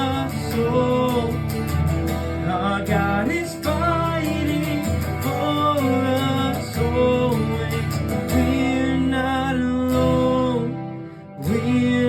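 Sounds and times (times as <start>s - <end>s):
acoustic guitar strumming: 0.0s - 12.0s.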